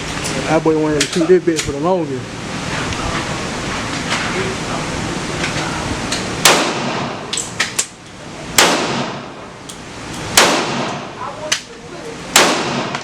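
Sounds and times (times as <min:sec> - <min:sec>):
pistol shots with ringing tail: 0:06.4 - 0:07.3, 0:08.2 - 0:11.1, 0:12.2 - 0:13.0
fainter sharp cracks: 0:12.3 - 0:13.0.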